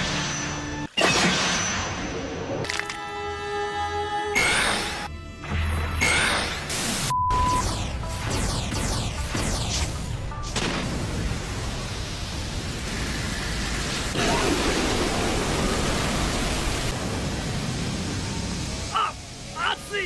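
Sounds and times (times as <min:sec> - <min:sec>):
rushing hissing noise: 0:10.7 - 0:20.0.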